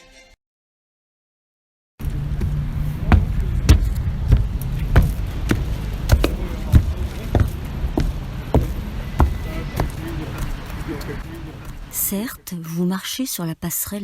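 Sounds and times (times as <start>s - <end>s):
footsteps on gangway: 2.0s - 12.2s.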